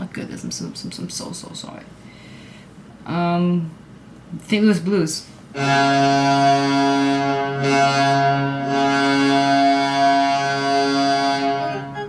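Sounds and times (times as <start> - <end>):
deep goal horn blast: 5.6 - 12.0.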